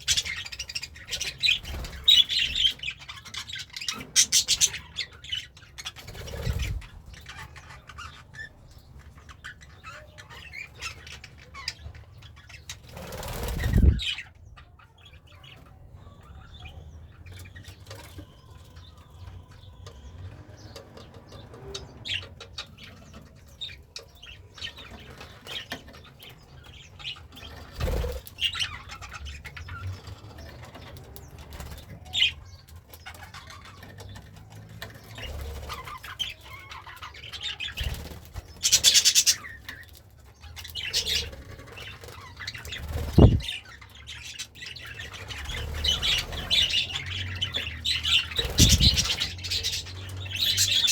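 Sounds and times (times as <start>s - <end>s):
wing flapping: 12.9s - 14.0s, 48.3s - 49.7s
budgerigar chirping: 38.6s - 39.8s.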